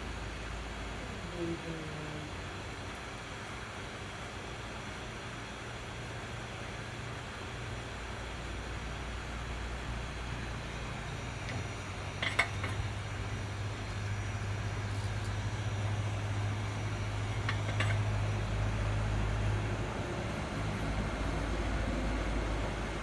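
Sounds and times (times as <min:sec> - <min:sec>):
low electrical hum: 0:00.0 - 0:23.0.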